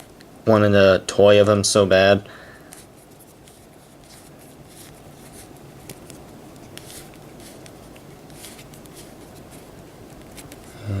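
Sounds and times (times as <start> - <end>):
toy figure handling rustles: 2.7 - 10.8.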